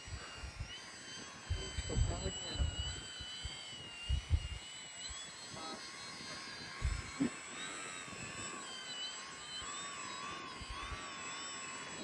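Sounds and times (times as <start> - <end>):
model plane motor whining: 0.0 - 12.0.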